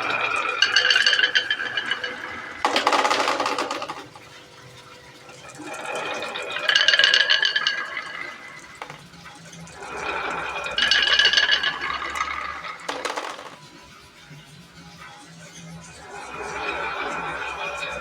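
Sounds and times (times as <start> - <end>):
marbles rattling down wooden run: 0.0 - 4.4, 5.4 - 9.2, 9.8 - 13.7.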